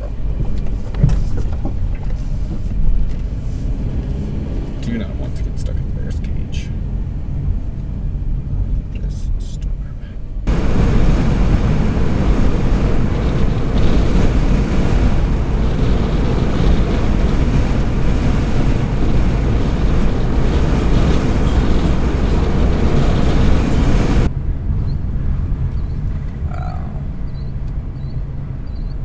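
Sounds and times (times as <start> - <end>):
moving vehicle rumble: 0.0 - 29.0
wind buffeting microphone: 10.4 - 29.0.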